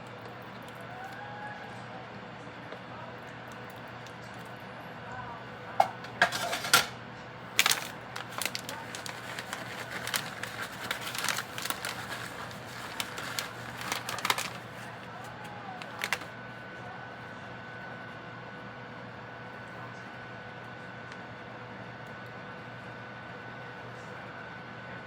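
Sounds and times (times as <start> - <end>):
cookware and utensils clattering: 5.8 - 7.0, 7.6 - 14.9.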